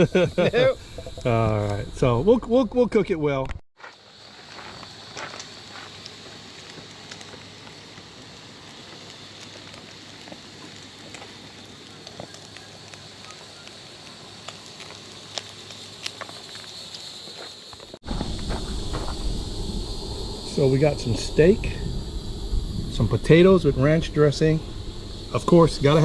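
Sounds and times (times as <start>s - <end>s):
steak sizzling on a grill: 0.0s - 2.3s, 3.8s - 26.0s
small pops and crackles: 4.5s - 18.0s.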